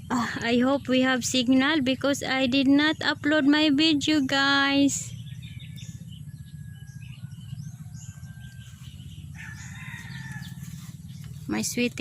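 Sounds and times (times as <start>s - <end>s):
rooster crowing: 6.4s - 11.0s.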